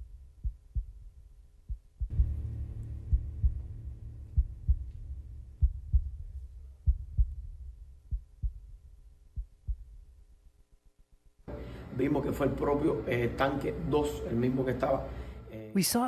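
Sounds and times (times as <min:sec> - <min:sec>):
short low thumps: 0:00.4 - 0:10.2
deep explosion boom: 0:02.1 - 0:08.6.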